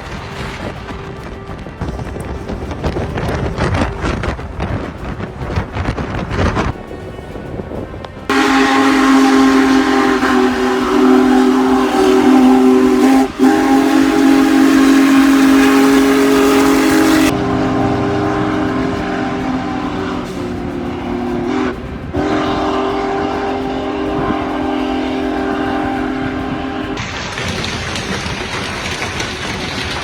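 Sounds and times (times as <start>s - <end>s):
loud held horn chord: 8.3s - 27.0s.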